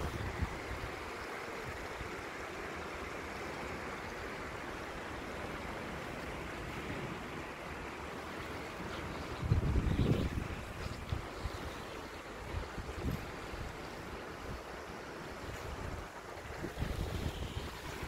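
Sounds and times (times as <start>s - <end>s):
wind buffeting microphone: 0.0s - 2.0s, 8.8s - 18.0s
floodwater rushing: 0.0s - 18.0s.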